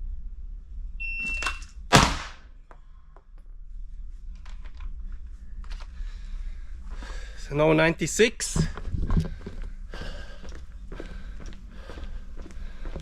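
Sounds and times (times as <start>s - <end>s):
pistol shot: 1.9s - 2.5s.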